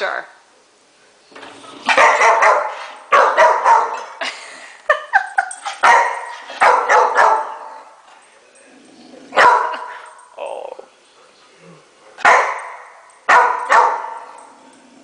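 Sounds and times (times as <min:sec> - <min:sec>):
dog barking: 0:01.9 - 0:04.1, 0:05.8 - 0:07.9, 0:09.4 - 0:10.0, 0:12.2 - 0:14.4.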